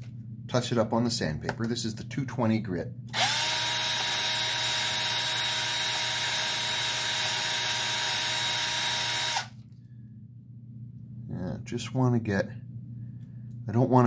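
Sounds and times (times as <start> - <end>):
electric drill spinning: 3.1 - 9.6.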